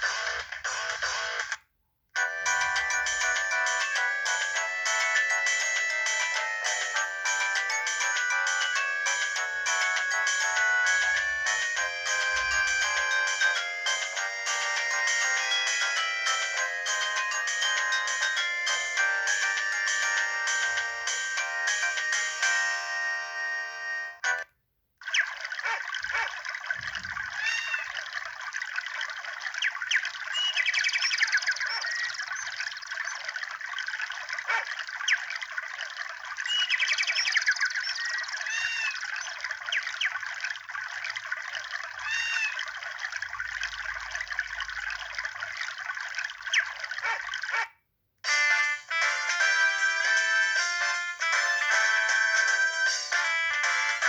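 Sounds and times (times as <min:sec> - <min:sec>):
ringtone melody: 0:02.2 - 0:24.5, 0:48.3 - 0:54.0
ringtone of trickling water: 0:02.2 - 0:47.6, 0:48.3 - 0:54.0.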